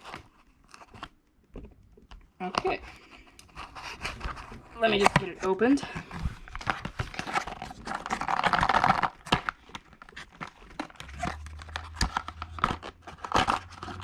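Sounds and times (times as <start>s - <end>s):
packaging crinkling and tearing: 0.0s - 1.2s, 2.5s - 14.0s
box parts clicking and scraping: 2.4s - 14.0s.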